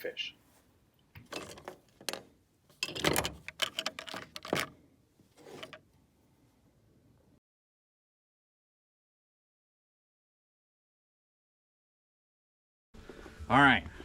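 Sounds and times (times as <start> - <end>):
hard gear clattering and knocking: 1.2 - 4.8, 5.4 - 5.8
soft rattle: 1.2 - 5.9.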